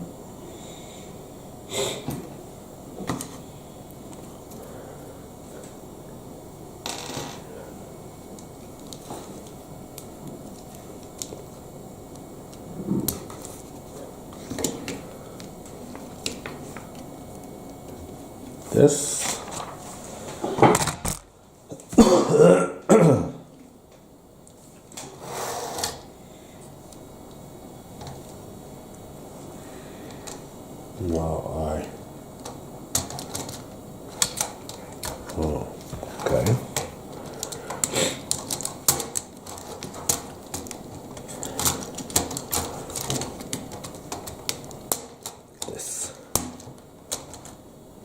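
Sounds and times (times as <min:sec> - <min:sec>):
person clearing throat: 0:21.9 - 0:23.5.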